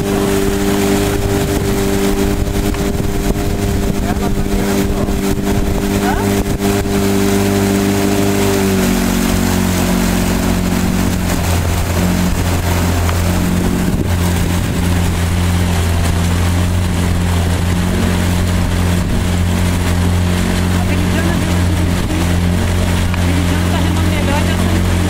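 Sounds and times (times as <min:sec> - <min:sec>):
motorboat engine running: 0:00.0 - 0:25.0
rushing water noise: 0:00.0 - 0:25.0.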